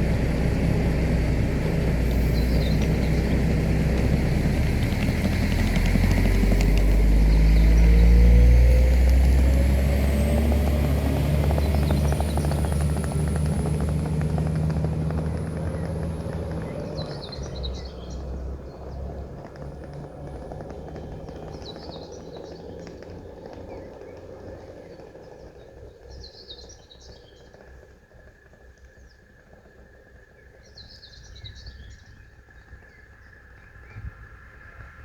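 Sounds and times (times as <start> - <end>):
train engine rumble: 0.0 - 32.0
bird chirping: 1.5 - 8.8, 10.1 - 19.2.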